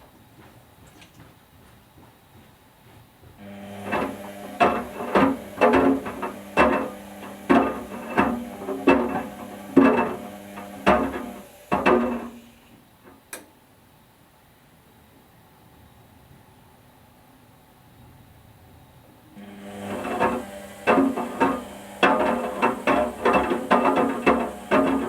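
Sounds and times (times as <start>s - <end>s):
washing machine motor hum: 3.4s - 12.8s, 19.4s - 25.0s.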